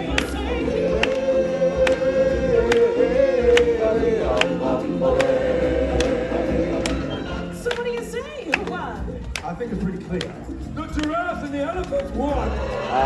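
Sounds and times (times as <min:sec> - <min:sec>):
steady drum beat: 0:00.0 - 0:07.1
choir holding a long note: 0:00.5 - 0:07.5, 0:12.6 - 0:13.0.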